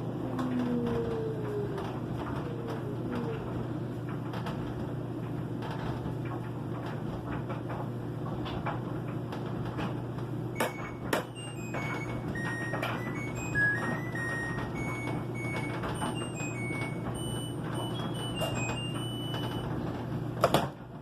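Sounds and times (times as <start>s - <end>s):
washing machine spinning: 0.0s - 21.0s
short high-pitched tones: 10.6s - 19.6s.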